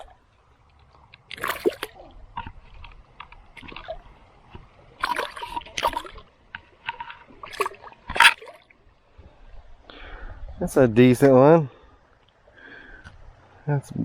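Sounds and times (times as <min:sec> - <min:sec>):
water splashing against kayak: 0:01.0 - 0:09.4.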